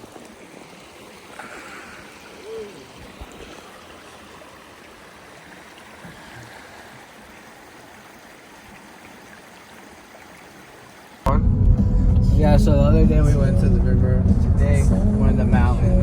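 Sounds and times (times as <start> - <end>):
river water flowing: 0.0 - 11.3.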